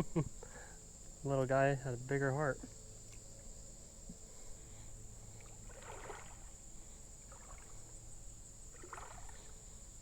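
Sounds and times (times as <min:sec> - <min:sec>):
crickets droning: 0:00.0 - 0:10.0
water splashing in a creek: 0:05.4 - 0:08.0, 0:08.6 - 0:09.7.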